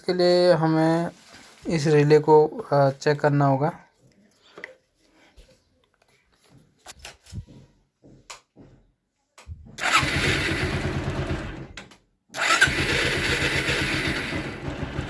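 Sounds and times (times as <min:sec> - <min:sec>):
motorcycle starter motor cranking: 0:09.8 - 0:15.0.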